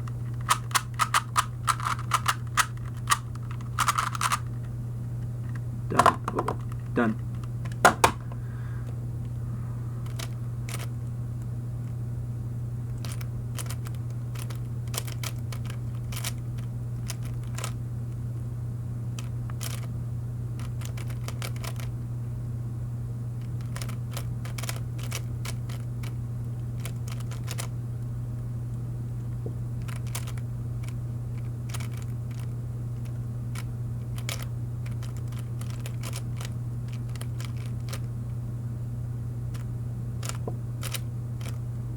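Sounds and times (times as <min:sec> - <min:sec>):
steady low hum: 0:00.0 - 0:41.9
puzzle cube clicking: 0:00.3 - 0:04.5, 0:10.0 - 0:10.9, 0:20.6 - 0:21.9, 0:29.8 - 0:32.5, 0:34.2 - 0:38.0, 0:40.2 - 0:41.6.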